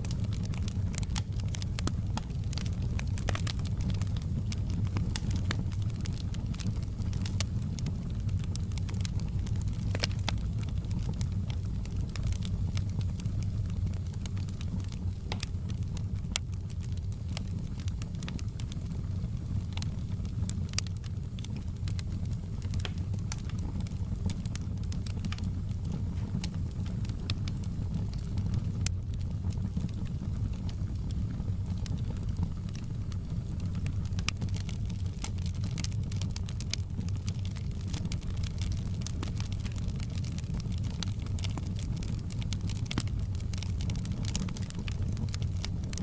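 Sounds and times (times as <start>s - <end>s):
sharp fire pops: 0.0s - 18.7s, 20.7s - 30.0s
wood fire crackling: 0.0s - 46.0s.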